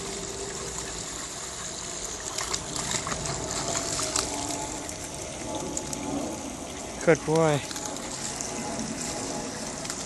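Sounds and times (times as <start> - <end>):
small waterfall pouring: 0.0 - 10.0
dog splashing in water: 2.0 - 6.5.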